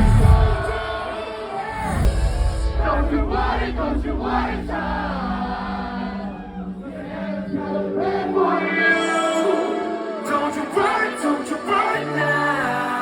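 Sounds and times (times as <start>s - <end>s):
heavy bass beat: 0.0s - 1.0s, 2.0s - 6.9s
choir-like sung vocals: 0.0s - 13.0s
sustained chords: 2.0s - 13.0s.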